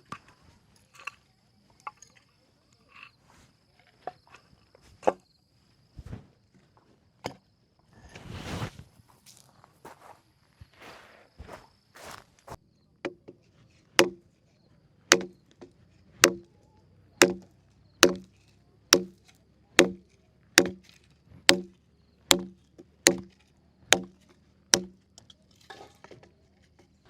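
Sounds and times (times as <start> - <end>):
wood being chopped: 14.0 - 14.2, 15.1 - 16.5, 17.2 - 25.0.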